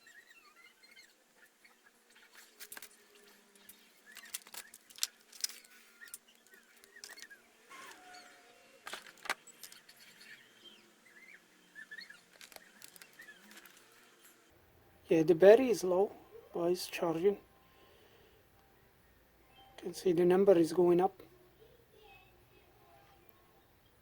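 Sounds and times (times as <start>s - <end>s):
hands handling tablet clicks: 3.6s - 7.3s, 8.8s - 10.0s, 12.3s - 13.8s
faint high chirps: 9.4s - 14.5s, 17.4s - 19.9s.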